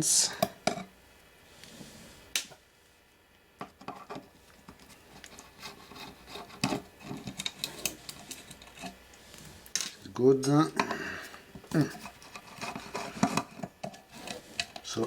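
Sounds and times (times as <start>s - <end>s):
screwdriver clicks and scrapes: 3.8s - 9.0s, 12.0s - 14.9s.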